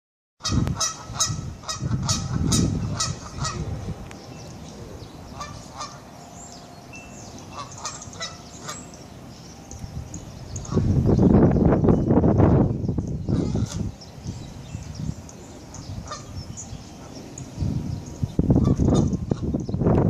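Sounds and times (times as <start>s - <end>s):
short bird calls: 0.8s - 9.3s, 13.1s - 17.6s.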